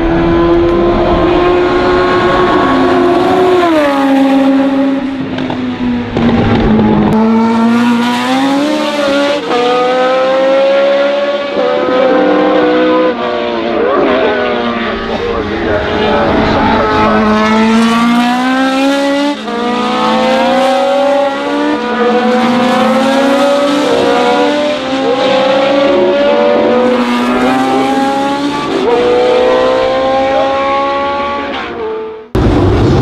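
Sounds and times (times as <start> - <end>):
racing car engines accelerating: 0.0 - 33.0.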